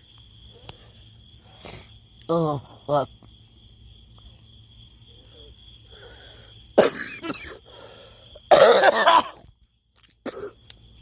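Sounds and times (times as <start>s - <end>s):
woman coughing: 6.8s - 7.6s, 8.5s - 9.4s.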